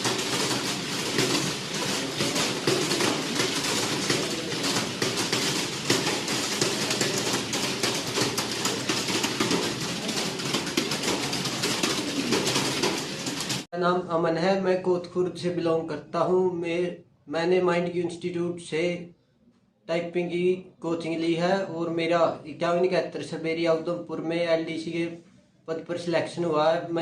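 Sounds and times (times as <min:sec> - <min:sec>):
many keyboards clattering: 0:00.0 - 0:13.7.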